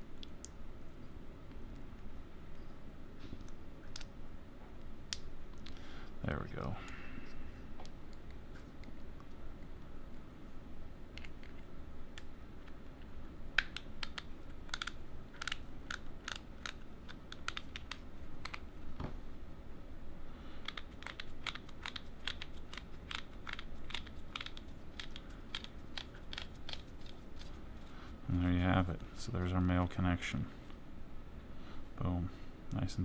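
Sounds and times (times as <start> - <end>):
connector parts clicking: 13.6 - 18.6, 20.6 - 27.6.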